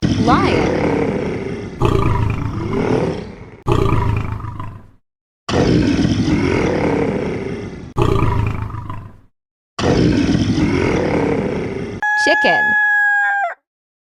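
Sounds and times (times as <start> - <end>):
lion roaring: 0.0 - 4.9, 5.5 - 9.2, 9.8 - 12.0.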